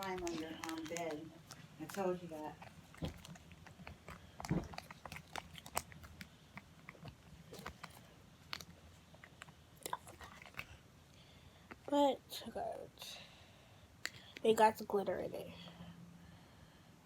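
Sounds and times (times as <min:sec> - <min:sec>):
sticky slime clicks and crackles: 0:00.0 - 0:10.8.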